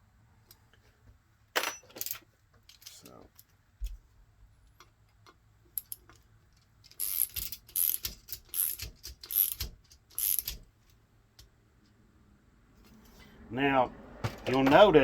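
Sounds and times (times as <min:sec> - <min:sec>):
ratchet clicking: 0:05.8 - 0:06.2, 0:06.9 - 0:10.7.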